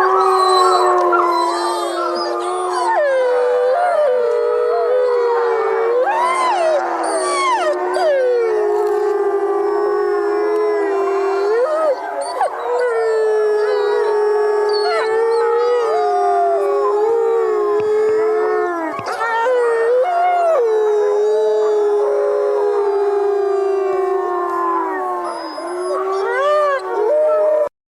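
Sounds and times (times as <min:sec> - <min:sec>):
wolves howling in chorus: 0:00.0 - 0:27.7.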